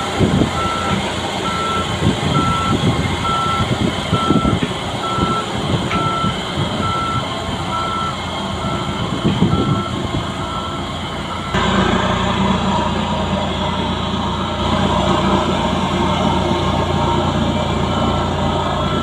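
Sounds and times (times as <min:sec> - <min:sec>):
skid steer engine rumble: 0:00.0 - 0:19.0
backup alarm beeping: 0:00.6 - 0:11.6.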